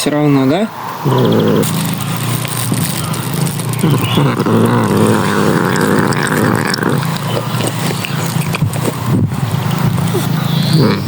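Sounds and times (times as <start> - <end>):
cat growling: 1.0 - 11.0.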